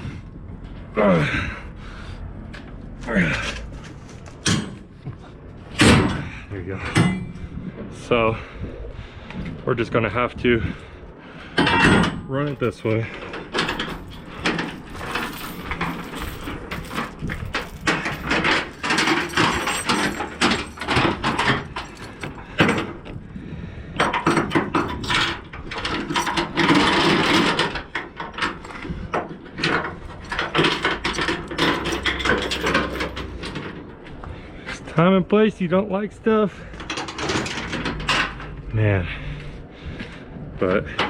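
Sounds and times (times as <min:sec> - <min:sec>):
chain clanking and rattling: 0:02.4 - 0:07.7, 0:11.5 - 0:23.2, 0:23.9 - 0:35.0, 0:36.6 - 0:38.6.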